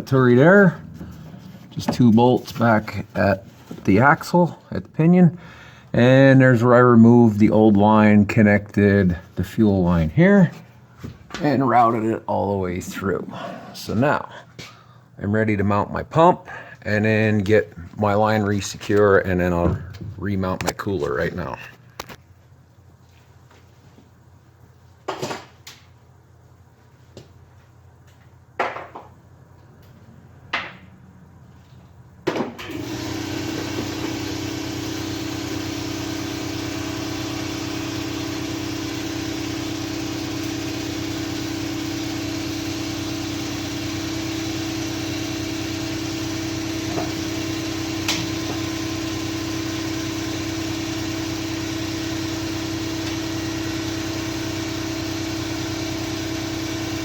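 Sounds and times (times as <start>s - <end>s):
motor humming: 32.7s - 57.0s.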